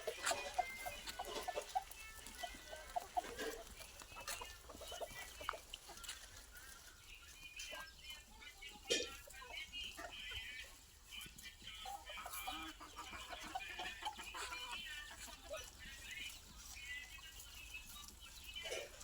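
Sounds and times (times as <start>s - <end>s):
faint clicks and rustles: 0.0s - 8.0s
chickens clucking: 0.0s - 19.0s.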